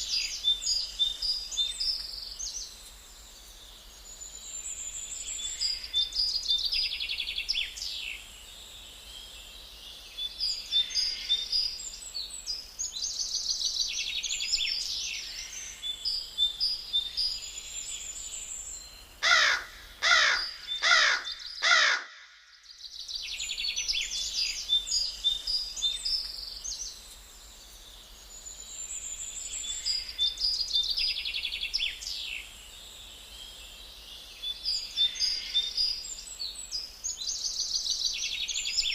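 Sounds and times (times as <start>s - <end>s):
songbirds chirping: 0.0s - 38.9s
crow cawing: 19.2s - 22.5s.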